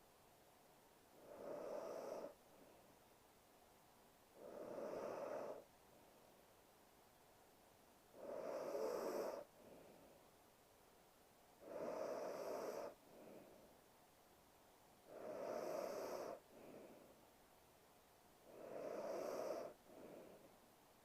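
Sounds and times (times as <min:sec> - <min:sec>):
soft breath: 0:01.1 - 0:03.1, 0:04.3 - 0:06.4, 0:08.1 - 0:10.4, 0:11.6 - 0:13.9, 0:15.0 - 0:17.4, 0:18.4 - 0:20.8
woman snoring: 0:01.2 - 0:02.4, 0:04.4 - 0:05.6, 0:08.2 - 0:09.5, 0:11.6 - 0:13.0, 0:15.1 - 0:16.4, 0:18.5 - 0:20.1.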